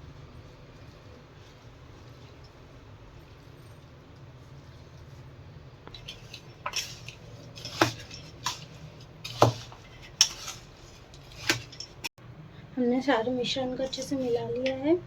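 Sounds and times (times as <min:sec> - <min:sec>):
spoon knocking and scraping bowl: 0:05.9 - 0:12.1.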